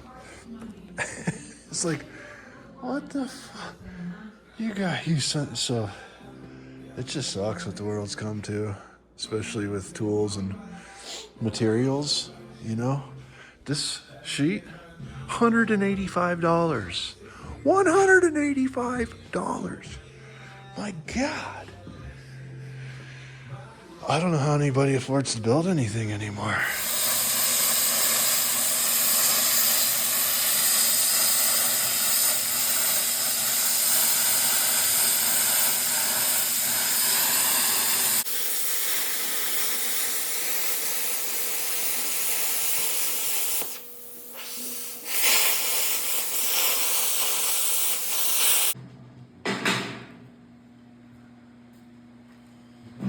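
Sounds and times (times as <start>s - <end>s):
loud hiss of rushing air: 26.7s - 48.8s.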